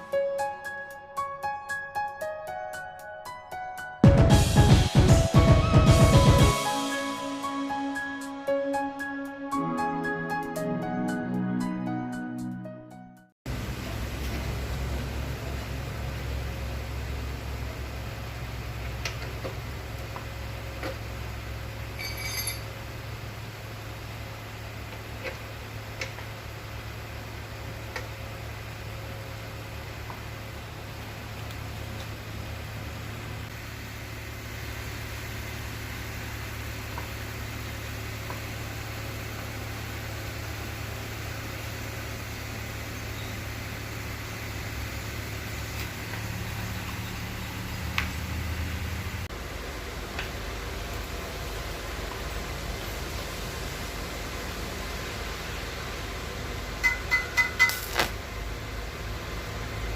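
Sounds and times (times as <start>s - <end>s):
high ringing tone: 22.0s - 22.7s, 56.8s - 58.0s
welding arc hissing: 57.5s - 58.2s.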